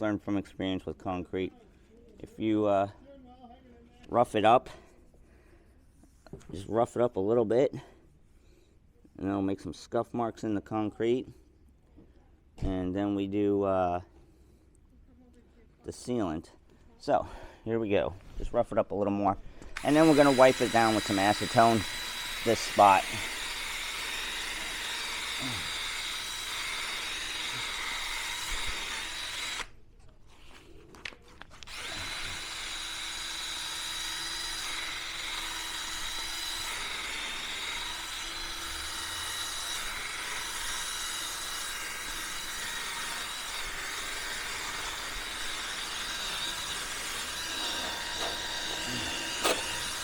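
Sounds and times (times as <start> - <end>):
drill wire brush on concrete: 19.8 - 50.0.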